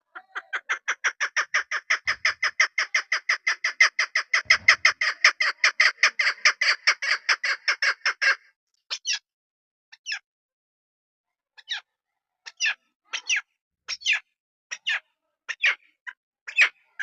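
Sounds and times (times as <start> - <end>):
partridge calling chuk notes: 0.1 - 8.4.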